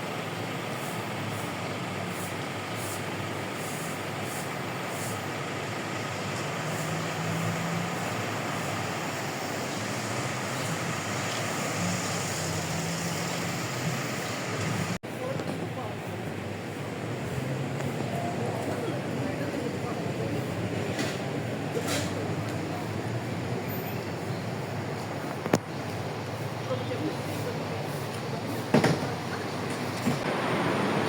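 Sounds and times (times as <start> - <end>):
road traffic: 0.0 - 31.0
low engine hum: 29.2 - 31.0.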